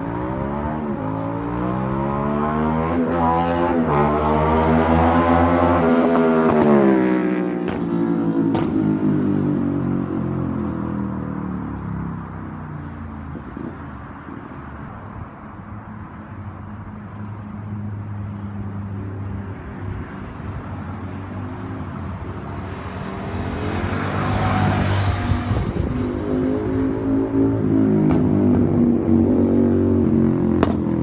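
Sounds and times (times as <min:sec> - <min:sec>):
motorcycle passing by: 0:00.0 - 0:10.6, 0:21.8 - 0:31.0.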